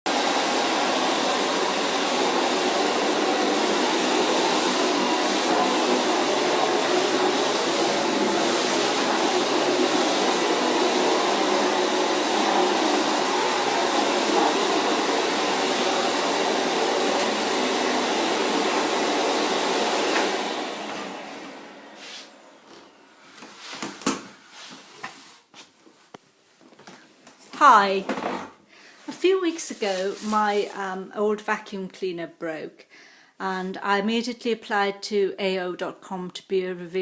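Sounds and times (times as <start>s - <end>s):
vacuum cleaner running: 0.1s - 24.0s, 29.5s - 30.7s.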